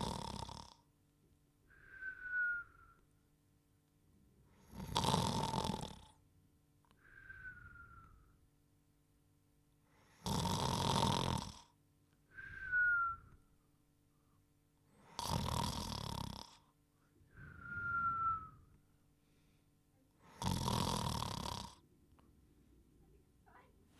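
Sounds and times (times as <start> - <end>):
person snoring: 0.0 - 0.8, 4.6 - 6.2, 10.1 - 11.8, 15.0 - 16.7, 20.2 - 21.8
thin whistle falling in pitch: 17.4 - 18.7.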